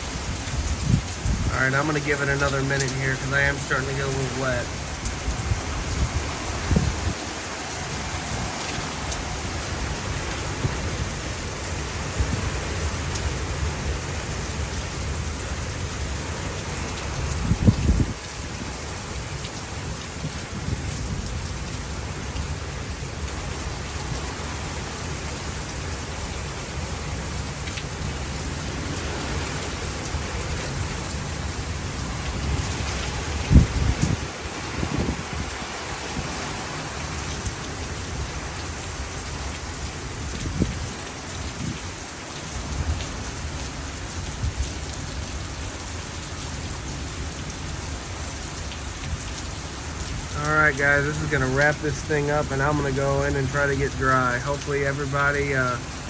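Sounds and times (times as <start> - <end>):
gusty wind buffeting microphone: 0.0 - 2.4, 4.5 - 24.7, 28.0 - 39.4, 40.0 - 43.2
heavy rain falling: 0.0 - 56.0.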